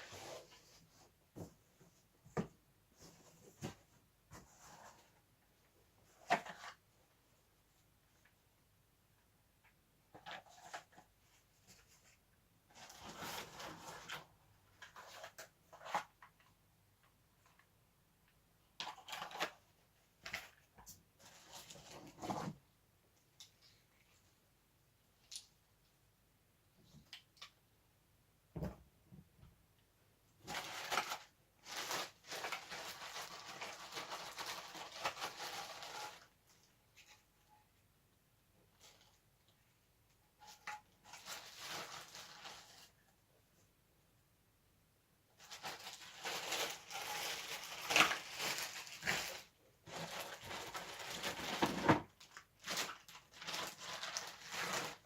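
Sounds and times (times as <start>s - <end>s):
packaging rustling and scraping: 30.4s - 37.2s, 40.4s - 43.0s, 45.4s - 55.0s.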